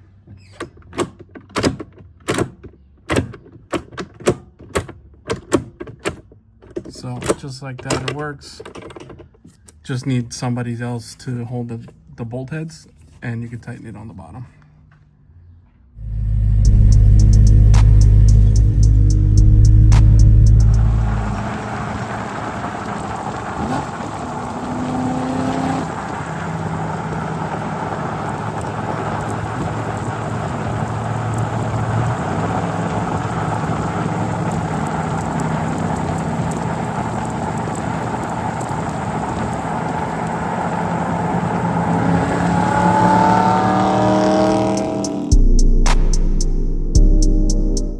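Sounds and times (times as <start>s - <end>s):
road noise: 9.4s - 46.4s
car engine revving: 16.0s - 46.6s.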